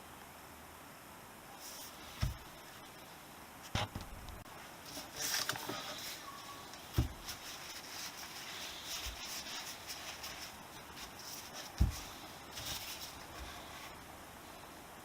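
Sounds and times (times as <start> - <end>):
dull thumps: 2.1 - 2.6, 6.9 - 7.6, 10.2 - 13.6
scraping and rustling of parts: 4.8 - 14.0.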